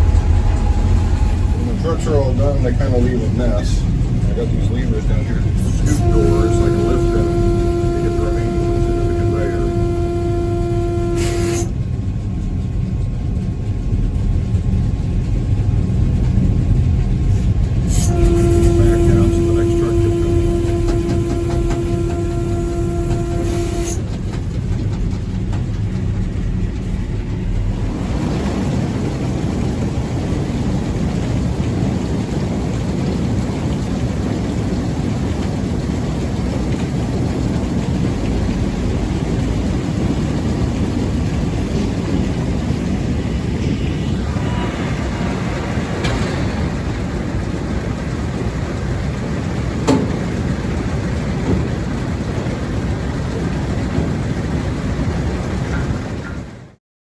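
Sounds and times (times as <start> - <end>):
conveyors running: 0.0 - 56.8.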